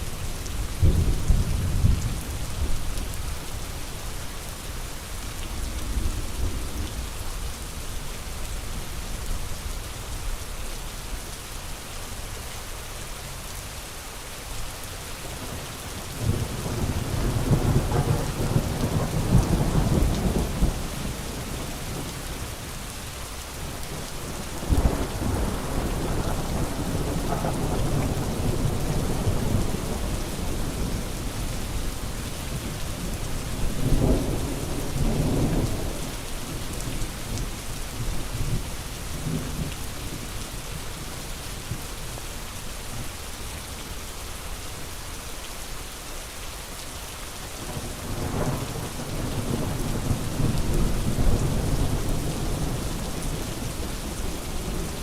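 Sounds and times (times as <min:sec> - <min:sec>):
steady rain falling: 0:00.0 - 0:55.0
thunder rumbling: 0:23.6 - 0:31.8.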